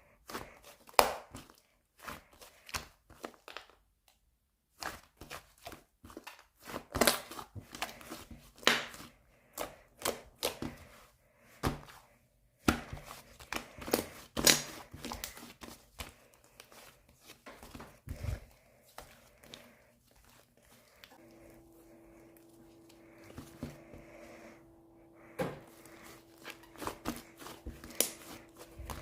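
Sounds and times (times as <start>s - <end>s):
slime squishing and crackling: 4.7s - 11.0s, 12.7s - 21.2s, 25.8s - 29.0s.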